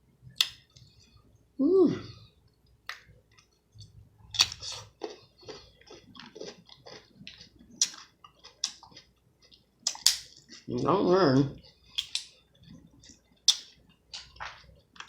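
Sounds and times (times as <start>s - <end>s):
chewing and lip smacks: 2.9s - 10.7s, 11.6s - 15.0s.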